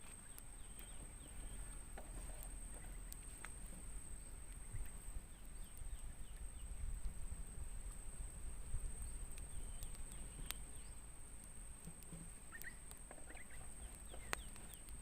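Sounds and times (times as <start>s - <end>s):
bird chirps: 9.0s - 11.0s, 12.5s - 14.9s.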